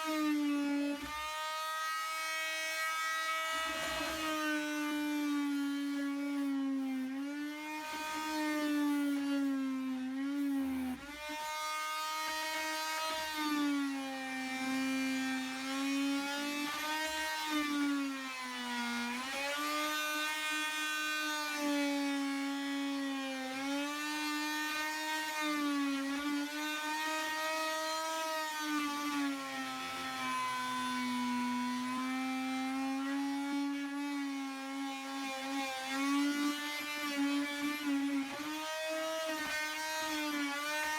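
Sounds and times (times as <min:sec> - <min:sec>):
oscillating multi-tool buzzing: 0:00.0 - 0:21.8.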